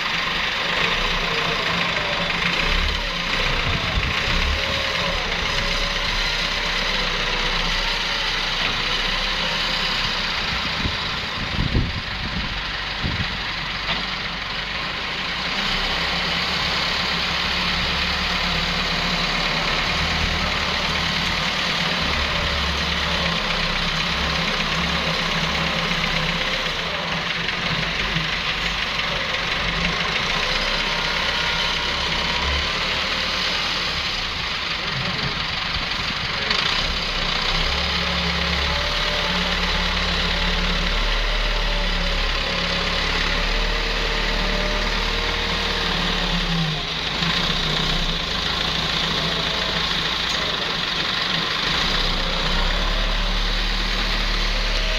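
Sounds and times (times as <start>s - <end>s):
diesel engine running: 0.0s - 54.9s.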